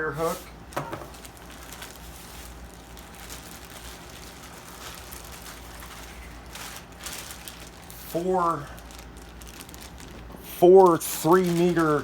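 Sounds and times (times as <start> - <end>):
steady low hum: 0.0 - 12.0
rustling and knocking of test leads: 0.2 - 7.9.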